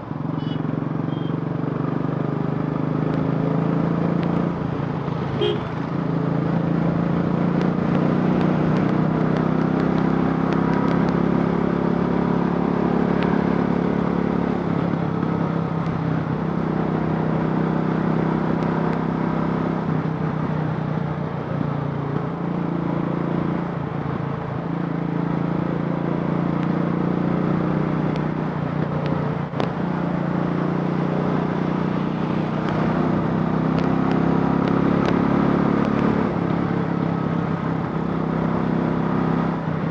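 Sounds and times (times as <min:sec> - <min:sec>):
motorcycle engine running: 0:00.0 - 0:19.0.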